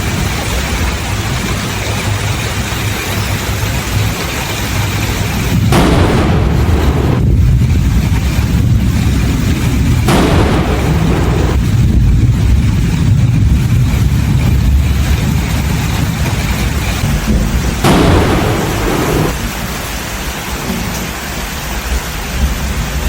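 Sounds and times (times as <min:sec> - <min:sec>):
low thunder rumble: 0:00.0 - 0:20.0
thunder cracks: 0:00.0 - 0:20.0.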